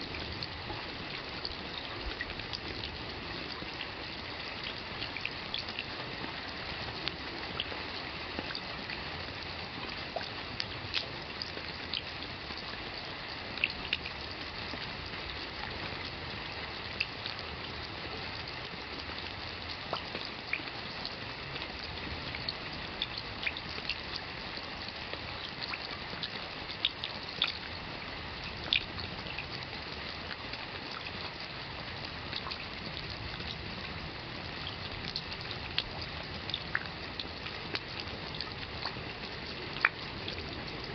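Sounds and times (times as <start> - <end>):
raindrops tapping close by: 0.0 - 40.9
steady rain hiss: 0.0 - 40.9.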